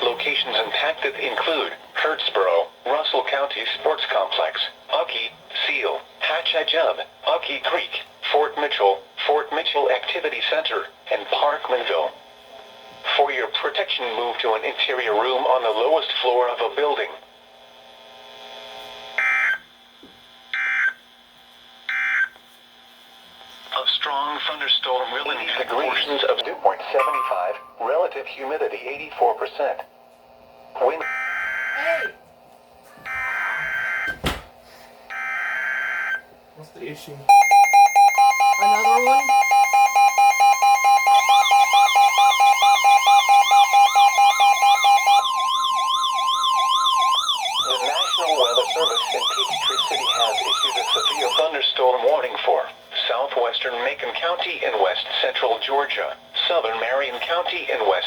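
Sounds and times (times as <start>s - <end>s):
faint radio hiss: 23.5s - 27.0s, 47.7s - 58.0s
digital data tones: 37.3s - 51.4s
siren-like wail: 37.3s - 51.4s.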